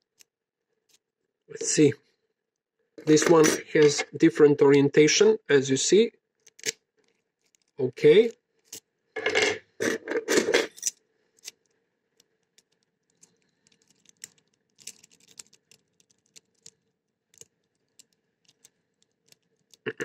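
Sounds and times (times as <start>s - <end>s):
key scratching in a lock: 9.9s - 19.8s.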